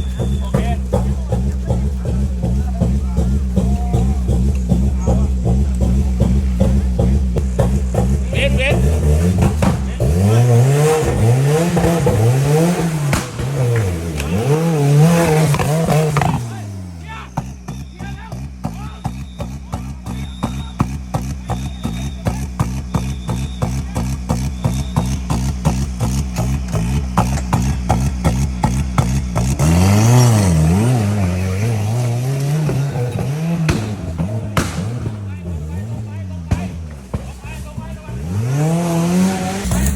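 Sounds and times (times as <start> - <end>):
engine revving: 0.0 - 39.9
sharp knocks from vehicle: 8.8 - 10.3, 10.9 - 16.6, 31.8 - 35.3, 36.5 - 38.0.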